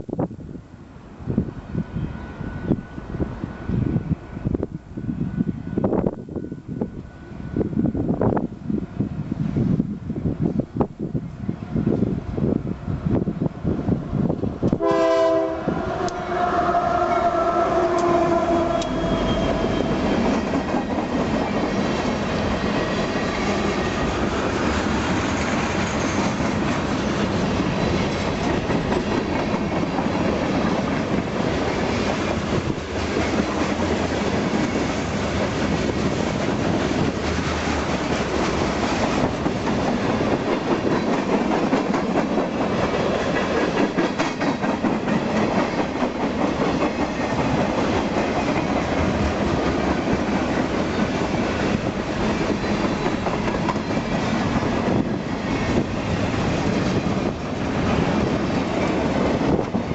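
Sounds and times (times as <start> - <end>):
train wheels clattering on rails: 17.9 - 59.9.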